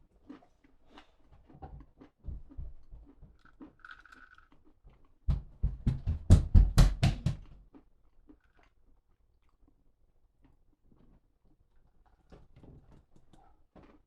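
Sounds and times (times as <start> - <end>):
crunchy chewing of snack: 0.1 - 5.2, 7.6 - 12.4, 13.2 - 14.0.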